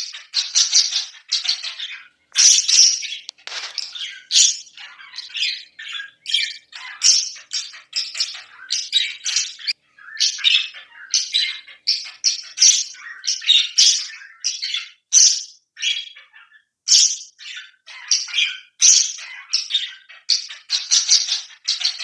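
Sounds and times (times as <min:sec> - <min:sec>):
parrots squawking: 0:00.4 - 0:11.6.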